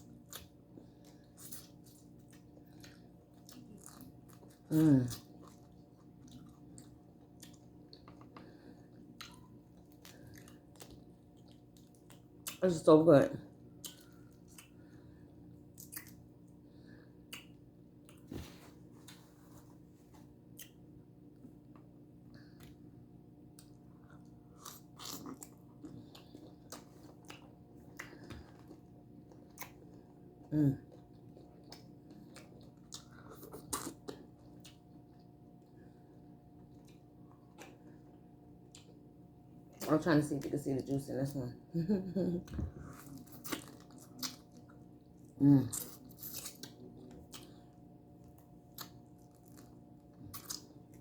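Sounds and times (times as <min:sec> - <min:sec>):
faint steady hum: 0:00.0 - 0:51.0
chewing and biting shrimp: 0:00.1 - 0:12.6, 0:23.5 - 0:35.7, 0:42.9 - 0:51.0.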